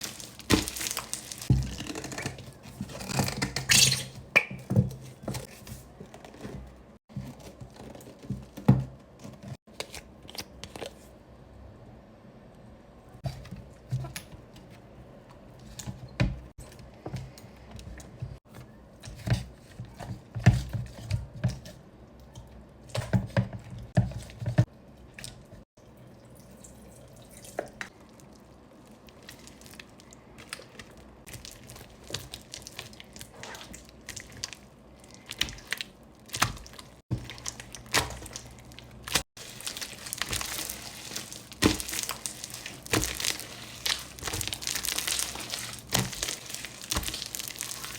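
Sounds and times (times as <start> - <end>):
slime squelching and popping: 29.0 - 47.9.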